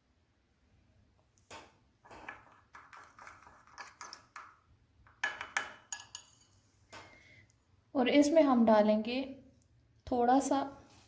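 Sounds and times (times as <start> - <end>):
spoon scraping a dish: 2.2 - 4.4, 5.3 - 6.6
spoon clinking on dish: 5.1 - 6.6.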